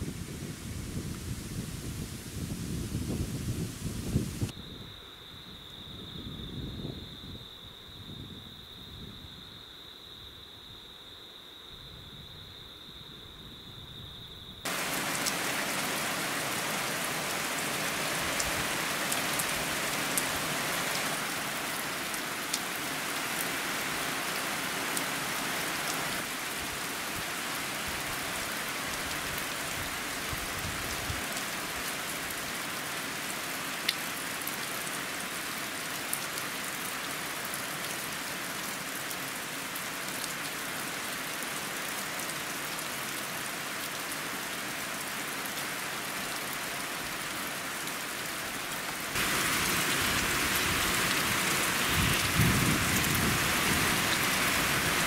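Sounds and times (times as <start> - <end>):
heavy rain on a metal roof: 14.6 - 55.0.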